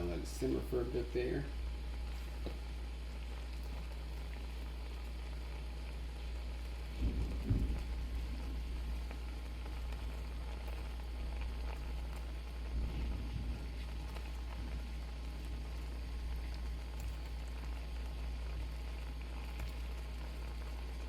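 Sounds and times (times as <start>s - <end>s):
low hum: 0.0s - 21.0s
shrimp bubbling in a pan: 0.0s - 21.0s
low bump: 6.9s - 9.1s.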